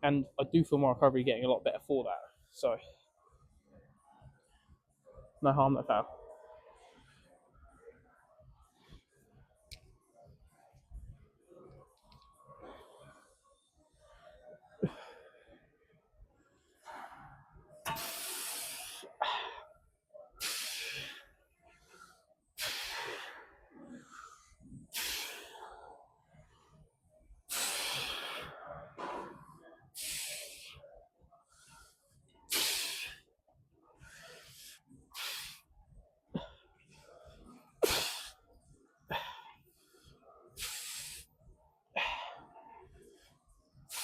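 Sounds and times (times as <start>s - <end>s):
man breathing hard: 20.4s - 21.4s, 22.1s - 25.8s, 27.5s - 28.8s, 30.0s - 30.8s, 31.5s - 33.2s, 34.0s - 35.7s, 39.1s - 41.3s
forceful hissing exhale: 27.5s - 28.5s.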